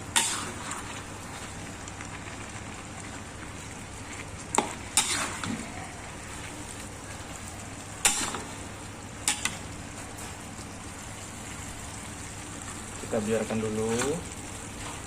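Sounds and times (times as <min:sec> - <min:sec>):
chicken sizzling in a pan: 0:00.0 - 0:15.0
spatula scraping a pan: 0:00.1 - 0:01.4, 0:04.9 - 0:05.7.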